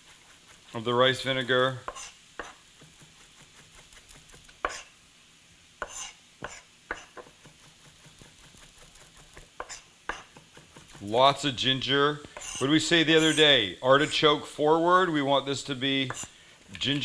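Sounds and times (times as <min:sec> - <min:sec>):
knife chopping on cutting board: 0:01.4 - 0:04.9, 0:05.8 - 0:11.1.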